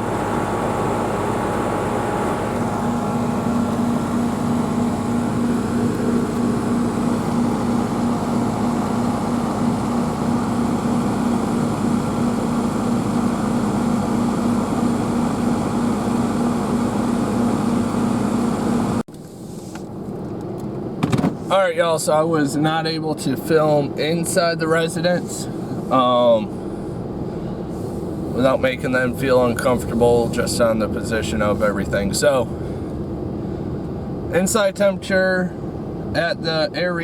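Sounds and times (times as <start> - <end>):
condenser fan rushing: 0.0 - 20.7, 21.4 - 37.0
compressor hum: 0.0 - 37.0.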